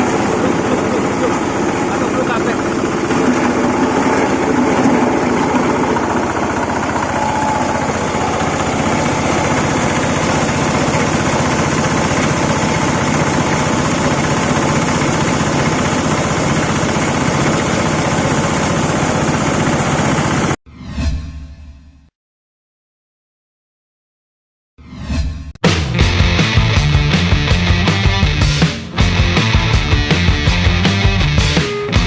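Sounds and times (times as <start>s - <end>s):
grinding machine droning: 0.0s - 20.6s.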